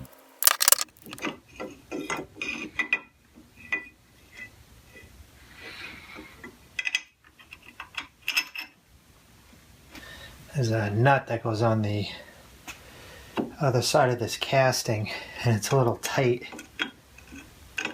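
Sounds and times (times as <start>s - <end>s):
metal parts and tools clinking: 0.0s - 1.2s.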